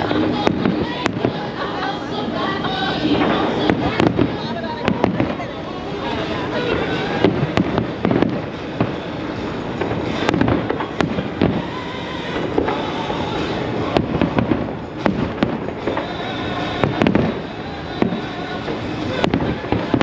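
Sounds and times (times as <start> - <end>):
fireworks booming and crackling: 0.0 - 20.0.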